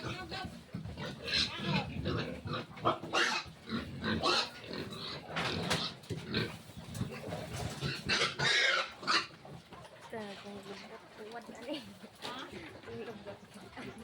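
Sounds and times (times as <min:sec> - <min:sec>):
piglets squealing: 0:08.1 - 0:09.3.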